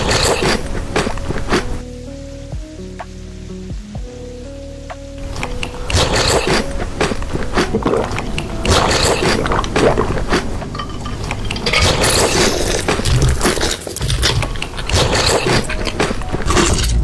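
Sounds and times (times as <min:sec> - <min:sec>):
wet chewing and squishing: 0:07.6 - 0:17.0.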